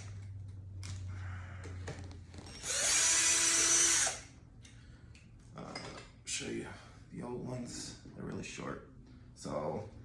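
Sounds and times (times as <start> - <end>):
power drill backing out screw: 2.5 - 4.2.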